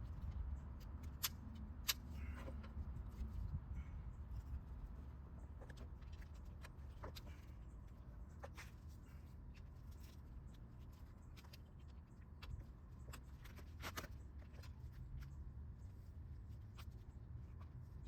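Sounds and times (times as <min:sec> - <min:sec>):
clicks and taps of handled parts: 0:01.0 - 0:02.7.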